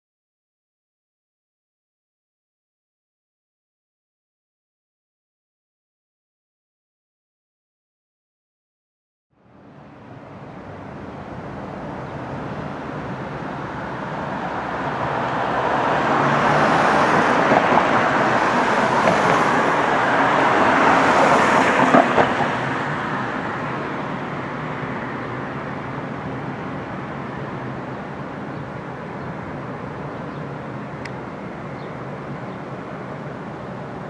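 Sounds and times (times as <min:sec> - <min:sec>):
vehicle passing: 0:10.2 - 0:34.0.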